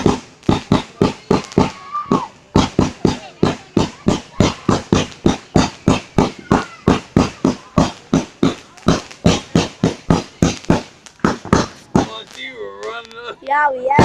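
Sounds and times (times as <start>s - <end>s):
fireworks banging: 0.0s - 14.0s.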